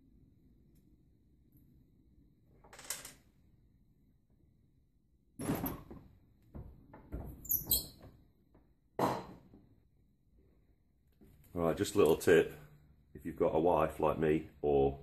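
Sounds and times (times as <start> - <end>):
door squeak: 7.4 - 8.0.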